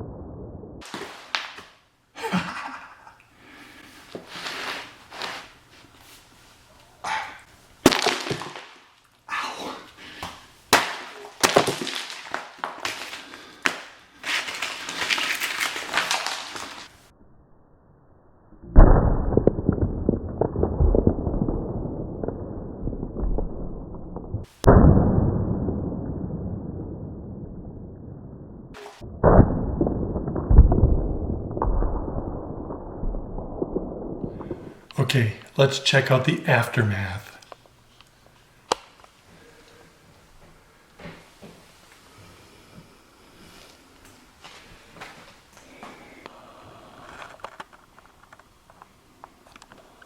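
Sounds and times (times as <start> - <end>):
gingerbread houses cracking apart: 0.8 - 3.8, 7.8 - 17.1, 18.8 - 26.8, 28.7 - 37.4.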